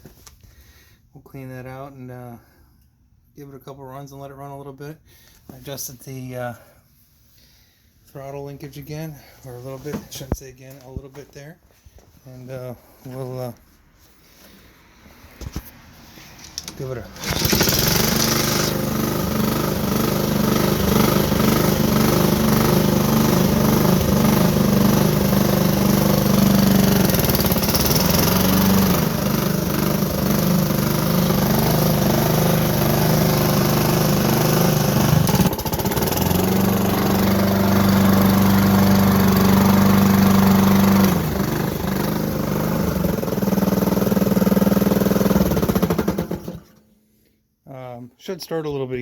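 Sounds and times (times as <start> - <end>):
lawn mower engine knocking: 16.6 - 46.8.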